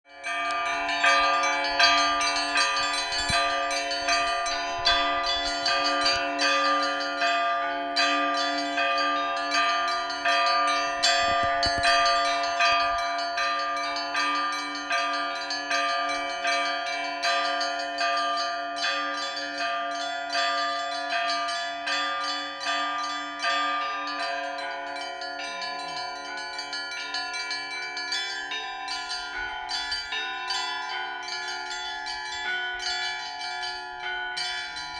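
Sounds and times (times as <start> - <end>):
church bells pealing: 0.1 - 34.9.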